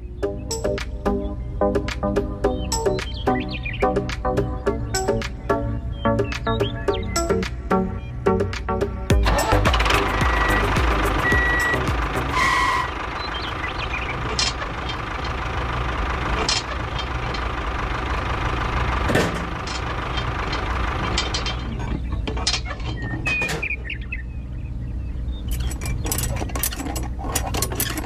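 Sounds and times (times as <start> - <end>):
sharp clicks and knocks: 19.1 - 23.8, 25.5 - 28.0.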